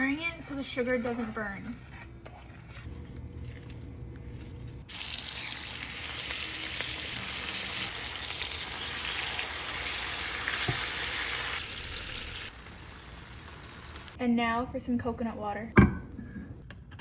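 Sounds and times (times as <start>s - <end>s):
sizzling in a hot skillet: 4.9s - 14.2s.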